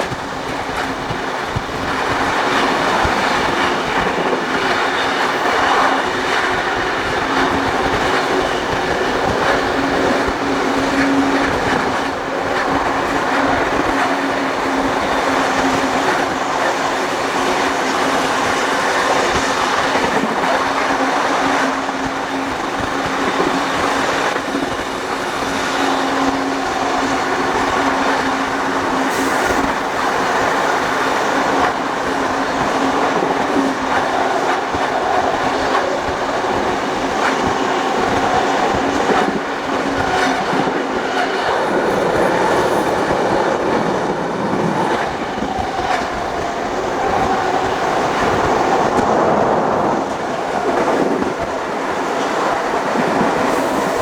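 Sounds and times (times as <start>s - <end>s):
train wheel and rail noise: 0.0s - 54.0s.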